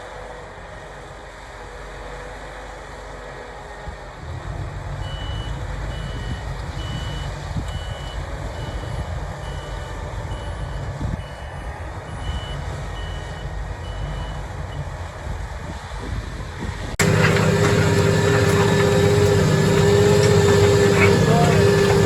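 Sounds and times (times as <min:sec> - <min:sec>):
diesel engine running: 0:17.0 - 0:22.0.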